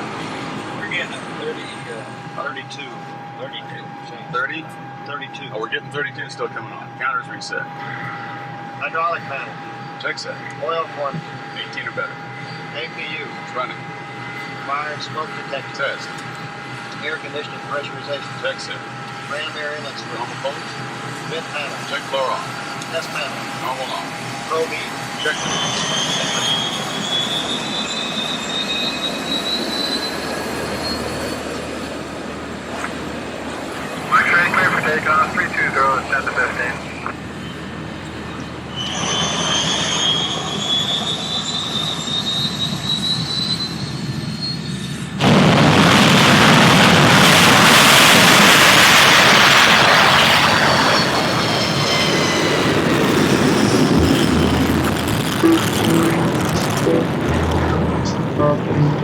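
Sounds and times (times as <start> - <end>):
high engine whine: 0.0 - 59.0
jet engine rushing noise: 18.9 - 40.9, 45.2 - 59.0.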